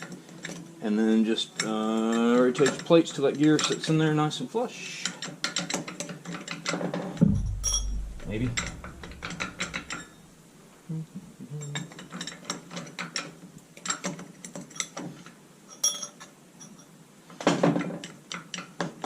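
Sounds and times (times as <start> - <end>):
metal clatter: 5.2 - 10.2
metal plates and gear clinking: 7.2 - 10.2.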